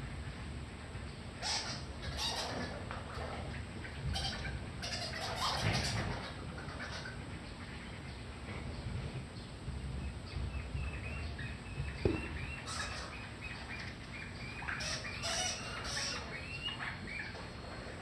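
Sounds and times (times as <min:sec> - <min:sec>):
small birds chirping: 0:06.8 - 0:17.7
dull knock: 0:12.0 - 0:12.5.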